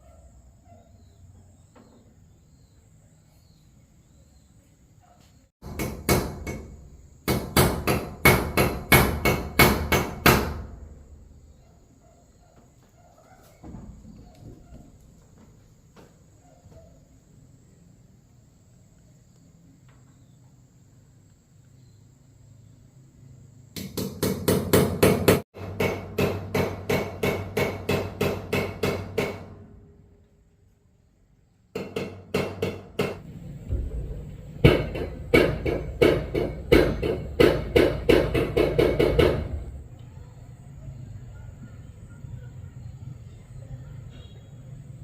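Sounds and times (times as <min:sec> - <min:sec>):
repeated sharp blows: 0:05.6 - 0:11.1, 0:31.8 - 0:39.8.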